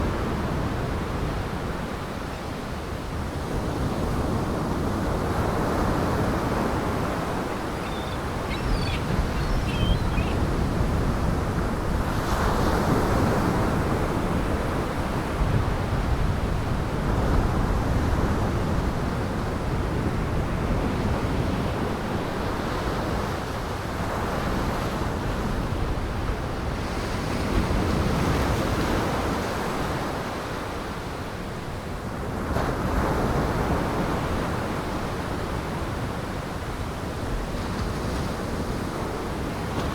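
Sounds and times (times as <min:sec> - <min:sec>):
gale wind blowing: 0:03.7 - 0:12.3
faint high chirps: 0:07.4 - 0:10.4.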